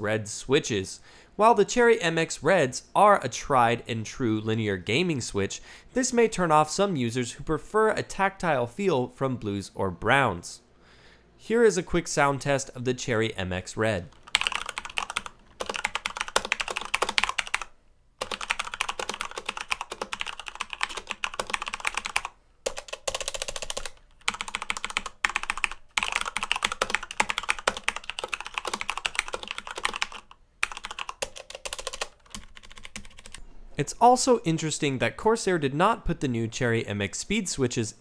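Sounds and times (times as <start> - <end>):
fast typing on mechanical keyboard: 14.1 - 33.4.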